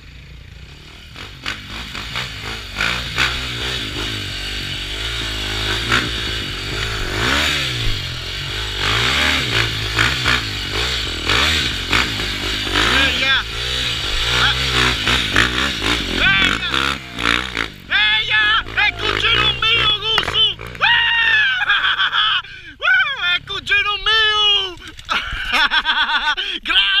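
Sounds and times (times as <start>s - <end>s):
motorcycles revving and passing: 0.0s - 22.4s
scattered clatter: 1.1s - 21.0s, 24.6s - 25.9s.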